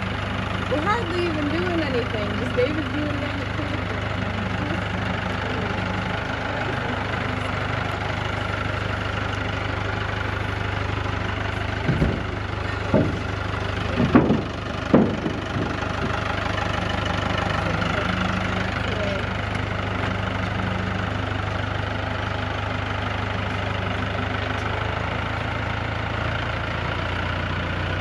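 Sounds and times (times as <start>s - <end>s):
engine idling: 0.0s - 28.0s
short clunks: 11.6s - 16.2s.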